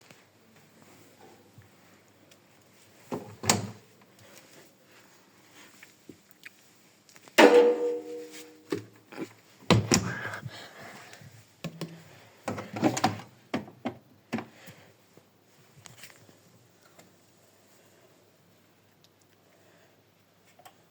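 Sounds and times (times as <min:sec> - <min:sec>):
metal clunk with ringing: 0:07.4 - 0:08.6.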